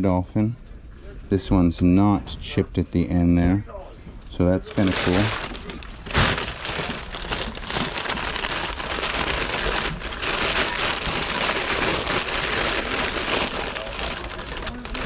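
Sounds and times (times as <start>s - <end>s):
paper wrapping crackling: 4.6s - 15.0s.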